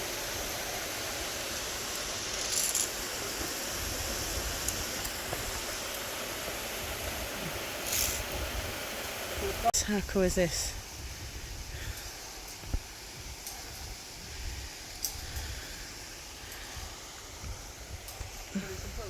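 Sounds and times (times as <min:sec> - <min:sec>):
waterfall rushing: 0:00.0 - 0:09.9.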